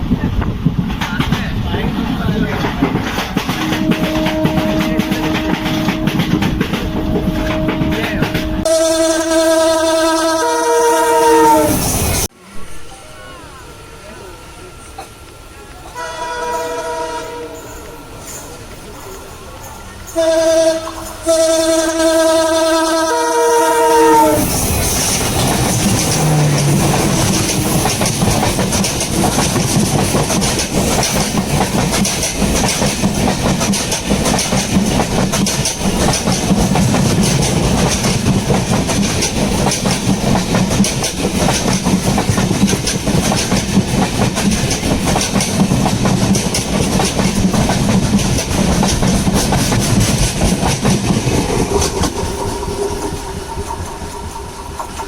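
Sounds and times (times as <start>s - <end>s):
wheels clacking over rail joints: 0.0s - 8.7s, 24.4s - 55.0s
train rumbling past: 0.0s - 55.0s
locomotive horn honking: 3.6s - 11.9s, 15.9s - 18.0s, 20.2s - 24.5s.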